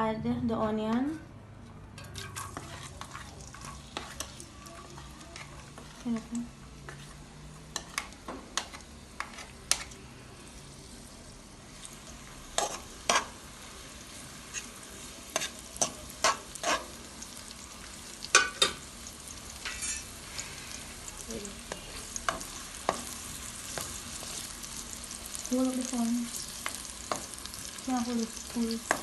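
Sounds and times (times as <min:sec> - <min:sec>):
spoon scraping a pan: 0:02.0 - 0:10.0, 0:11.7 - 0:20.8
onion sizzling in hot oil: 0:02.2 - 0:29.0.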